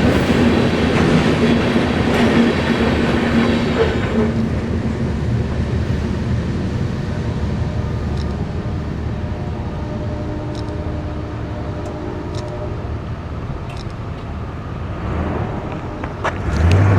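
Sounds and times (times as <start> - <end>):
freight train rumbling past: 0.0 - 16.9
faint clicks: 13.6 - 14.3.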